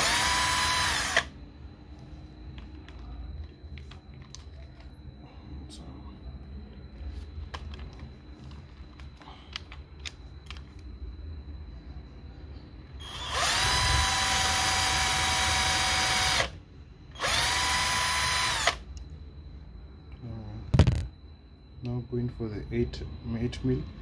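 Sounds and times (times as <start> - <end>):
electric drill whining: 0.0 - 1.3, 13.0 - 16.6, 17.2 - 18.8.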